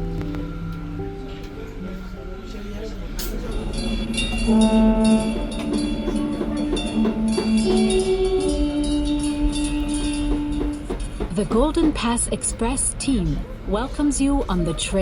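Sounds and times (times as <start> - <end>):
orchestral music with brass: 2.5 - 11.3.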